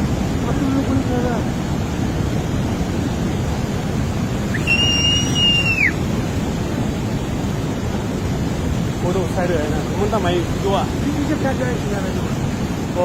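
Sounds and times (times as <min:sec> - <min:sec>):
floodwater rushing: 0:00.0 - 0:13.0
high whistle: 0:04.5 - 0:06.0.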